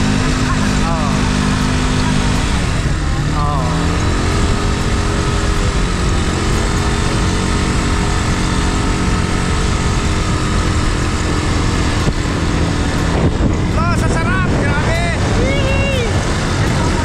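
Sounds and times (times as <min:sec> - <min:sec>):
engine running steadily: 0:00.0 - 0:17.0
rough rushing noise: 0:00.0 - 0:17.0.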